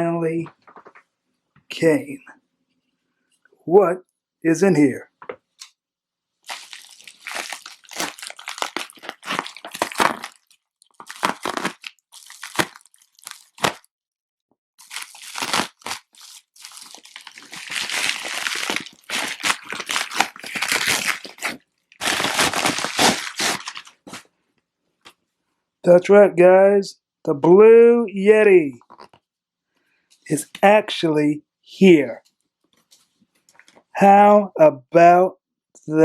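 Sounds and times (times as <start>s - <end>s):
packaging tearing and crinkling: 6.4s - 13.9s, 14.8s - 24.2s.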